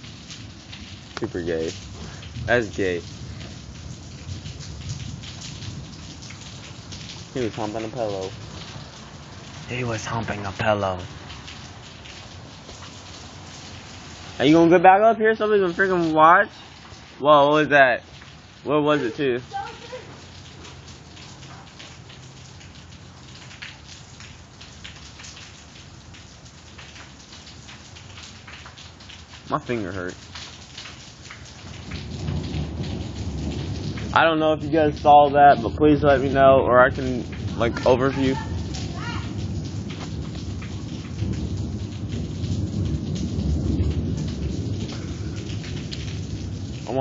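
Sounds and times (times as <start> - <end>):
raindrops hitting close: 0.0 - 47.0
steady rain falling: 0.0 - 47.0
low thunder rumble: 1.3 - 11.2, 31.6 - 47.0.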